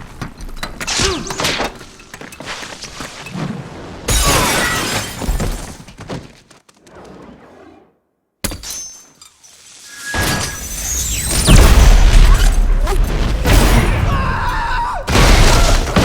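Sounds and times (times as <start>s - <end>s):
glass shattering: 4.1s - 5.8s, 8.4s - 12.6s
debris breaking: 8.5s - 16.0s.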